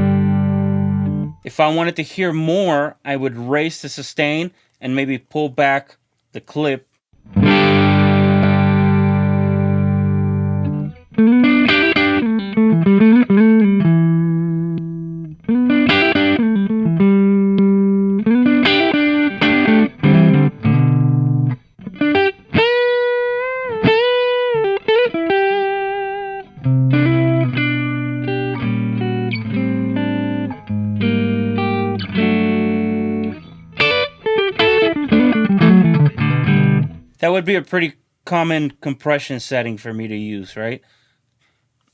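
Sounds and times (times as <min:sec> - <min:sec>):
clean electric guitar: 0:00.0 - 0:01.5, 0:07.2 - 0:37.2.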